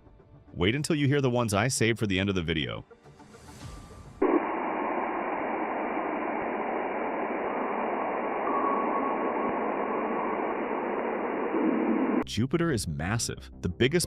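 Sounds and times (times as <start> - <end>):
faint tone: 4.2 - 12.2
static-like hiss: 4.2 - 12.2.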